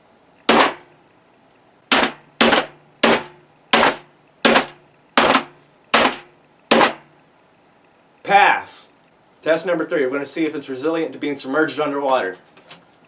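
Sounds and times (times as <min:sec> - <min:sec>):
keyboard being hit hard: 0:00.5 - 0:00.9, 0:01.9 - 0:07.0.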